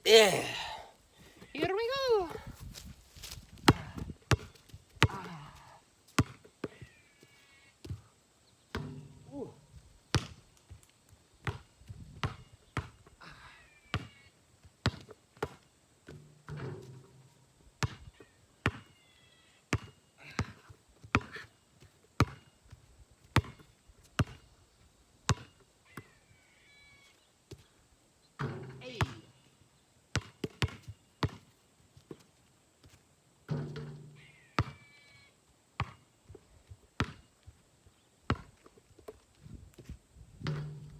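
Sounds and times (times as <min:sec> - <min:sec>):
brief low vocal sounds: 0:00.0 - 0:01.0.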